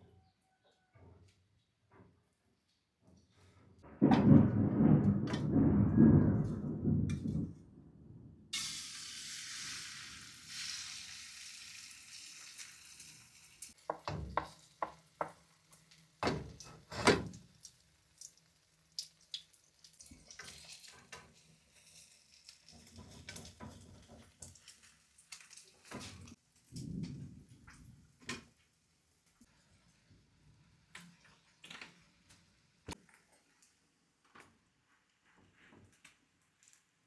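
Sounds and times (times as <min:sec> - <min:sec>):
food sizzling in a frying pan: 0:08.6 - 0:26.4.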